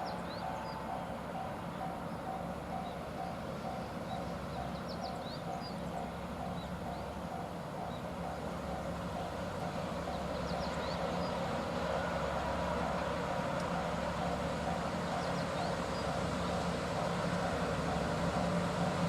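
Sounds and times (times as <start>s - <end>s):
level-crossing warning bell: 0.0s - 19.0s
bird chirps: 1.7s - 8.1s.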